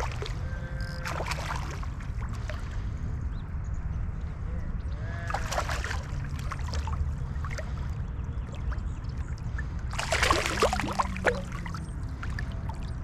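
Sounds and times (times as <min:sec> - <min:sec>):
fish splashing at surface: 0:05.3 - 0:07.8, 0:09.9 - 0:12.8
river water rushing: 0:09.9 - 0:12.6.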